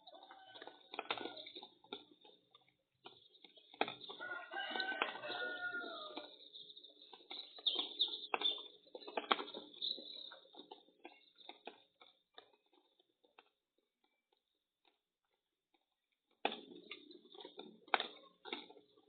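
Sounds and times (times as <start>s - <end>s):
pigeon cooing: 0.0s - 1.6s.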